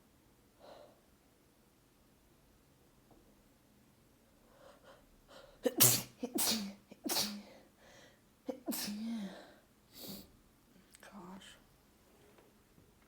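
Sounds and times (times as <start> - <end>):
person sneezing: 5.6 - 7.6, 8.5 - 9.4.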